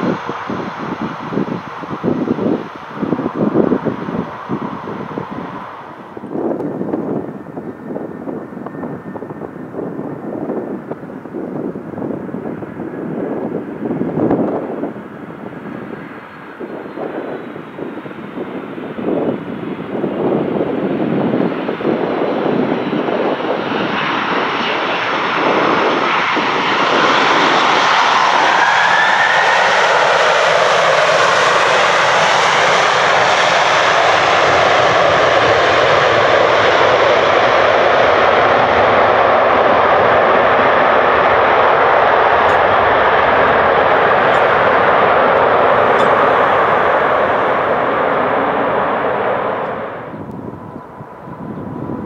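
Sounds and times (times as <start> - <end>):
loud engine noise: 25.4 - 51.4.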